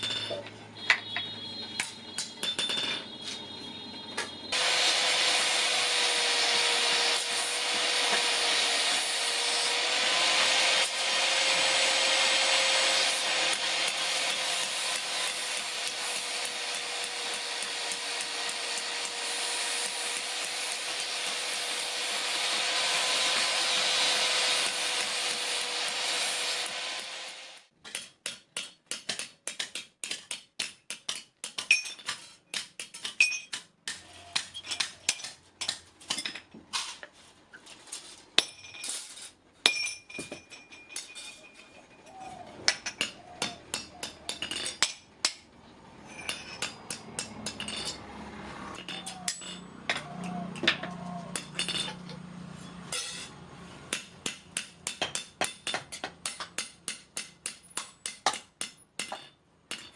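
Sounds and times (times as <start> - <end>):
hammer striking iron on anvil: 0.0 - 3.1, 11.6 - 26.8, 27.8 - 36.3, 39.6 - 41.2, 42.7 - 45.5, 46.1 - 48.0, 48.8 - 52.2, 52.9 - 59.9.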